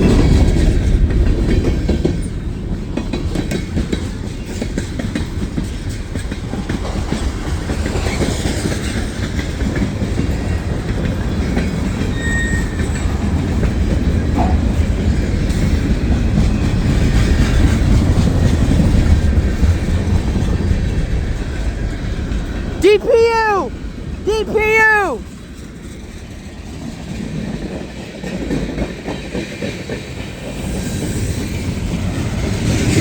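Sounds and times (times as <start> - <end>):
freight train rumbling past: 12.8 - 22.8, 25.3 - 33.0.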